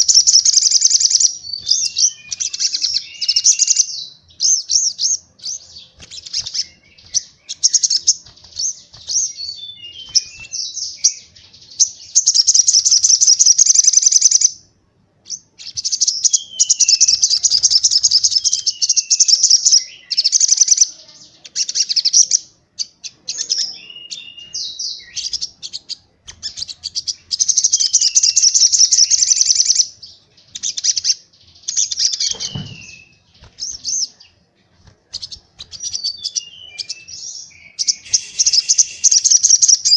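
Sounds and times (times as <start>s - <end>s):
songbird trilling: 0.0s - 14.5s, 15.3s - 29.9s, 35.1s - 39.9s
downward-sliding bird whistles: 35.8s - 39.9s.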